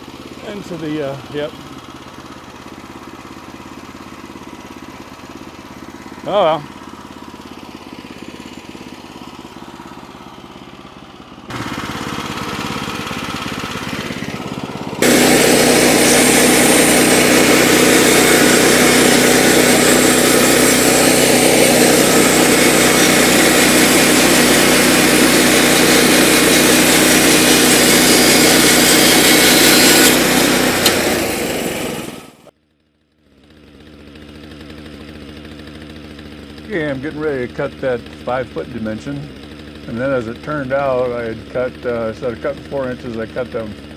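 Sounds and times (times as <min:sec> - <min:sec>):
sawmill engine running: 0:00.0 - 0:32.5, 0:33.2 - 0:43.9
saw blade cutting log: 0:00.3 - 0:01.9, 0:11.5 - 0:32.5, 0:33.4 - 0:43.9.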